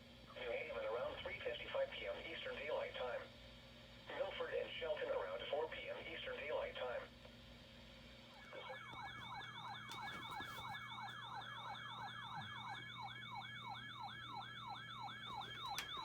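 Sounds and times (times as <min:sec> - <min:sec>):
faint steady hum: 0:00.0 - 0:16.0
electronic siren alarm: 0:08.4 - 0:16.0.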